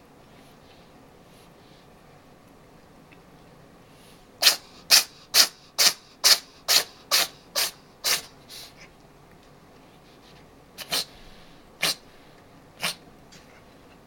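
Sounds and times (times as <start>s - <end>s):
cat sneezing: 4.4s - 8.9s, 10.8s - 11.2s, 11.8s - 12.1s, 12.8s - 13.5s.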